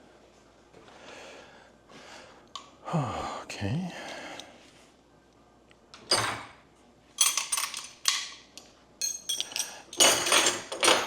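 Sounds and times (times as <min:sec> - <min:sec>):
hand tools and metal parts clattering: 0:07.2 - 0:11.0.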